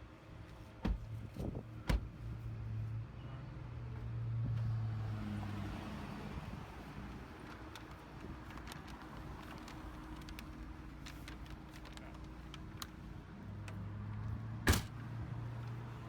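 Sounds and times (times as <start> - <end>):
sharp thump: 14.7 - 14.9.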